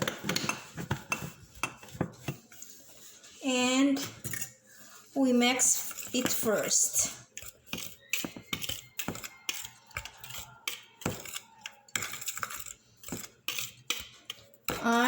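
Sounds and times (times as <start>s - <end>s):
utensil clinking against mixing bowl: 5.6s - 15.0s.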